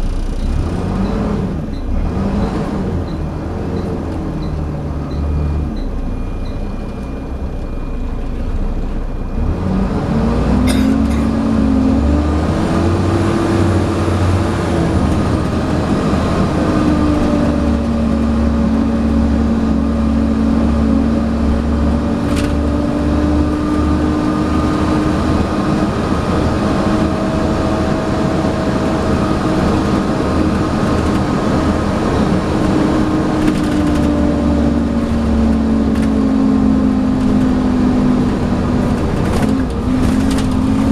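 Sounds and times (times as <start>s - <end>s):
bus engine drone: 0.0s - 40.9s
high whine: 4.5s - 12.0s.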